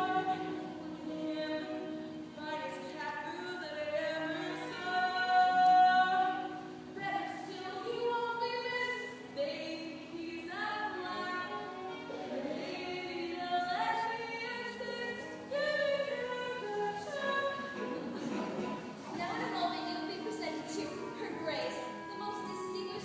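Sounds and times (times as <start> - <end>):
voices singing in harmony: 11.4 - 19.6.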